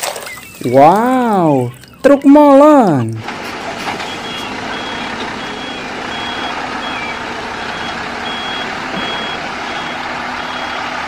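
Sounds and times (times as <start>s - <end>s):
truck reversing alarm beeping: 0.2s - 11.0s
engine noise hiss: 3.2s - 11.0s.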